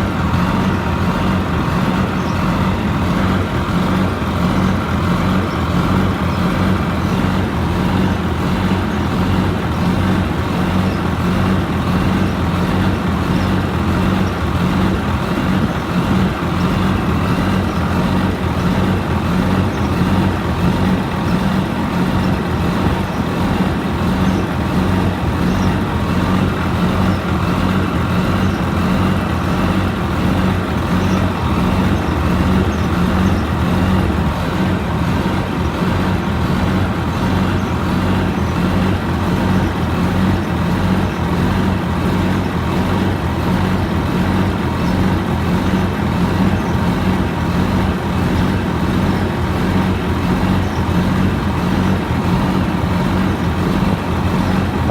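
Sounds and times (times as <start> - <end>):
diesel engine running steadily: 0.0 - 54.9.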